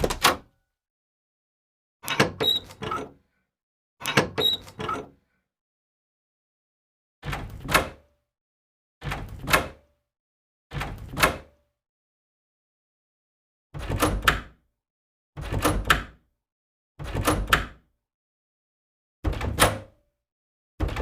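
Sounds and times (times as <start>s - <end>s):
door closing knock: 0.0s - 0.4s
door latch clicks: 0.0s - 0.5s.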